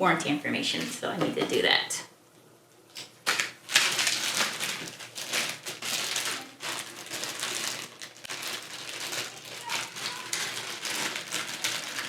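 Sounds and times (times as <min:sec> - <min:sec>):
packaging crinkling and rustling: 0:03.0 - 0:12.0.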